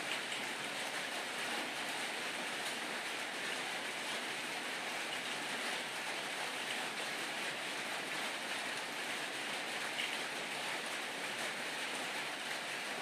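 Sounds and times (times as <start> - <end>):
steady rain falling: 0.0 - 13.0.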